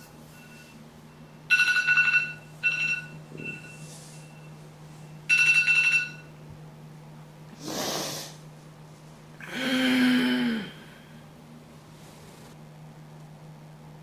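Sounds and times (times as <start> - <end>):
alarm beeping rapidly: 1.3 - 4.5, 5.3 - 6.3
person groaning: 9.4 - 11.1
person exhaling: 9.4 - 11.2.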